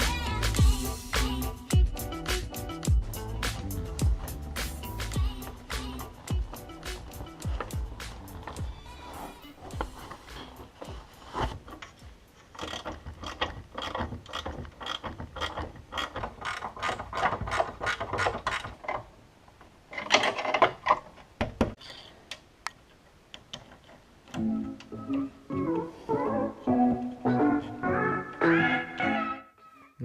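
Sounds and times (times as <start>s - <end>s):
hand ratchet clicking: 11.8s - 18.9s.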